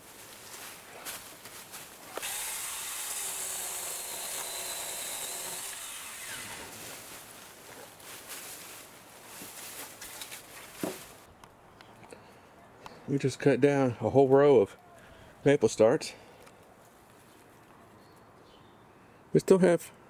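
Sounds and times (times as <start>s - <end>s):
mini chainsaw cutting wood: 2.0s - 7.3s.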